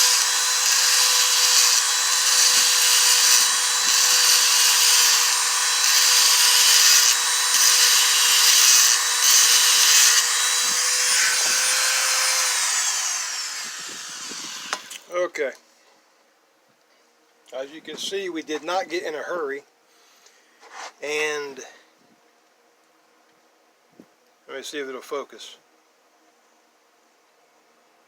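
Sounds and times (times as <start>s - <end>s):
grinding hiss on steel: 0.0s - 15.0s
power grinder whining: 0.0s - 15.0s.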